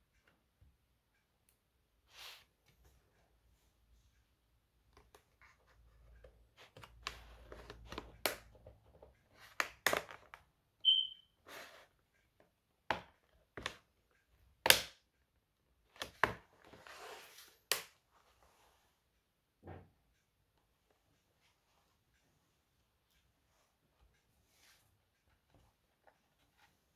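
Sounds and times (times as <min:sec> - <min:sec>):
scrape and rustle: 0:02.1 - 0:02.8, 0:16.7 - 0:17.6
brief squeak: 0:10.8 - 0:11.3.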